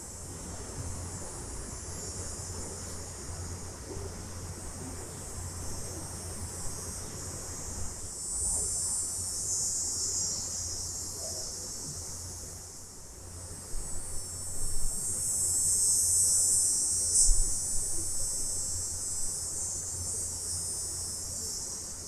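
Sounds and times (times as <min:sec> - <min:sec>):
cicadas buzzing: 0:00.0 - 0:13.0.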